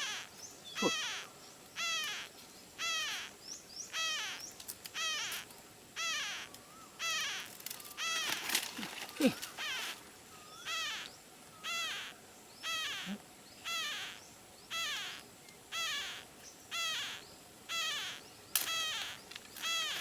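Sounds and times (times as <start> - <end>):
parrot chick calling: 0.0 - 3.3, 3.9 - 4.4, 5.0 - 5.4, 6.0 - 8.3, 10.6 - 20.0.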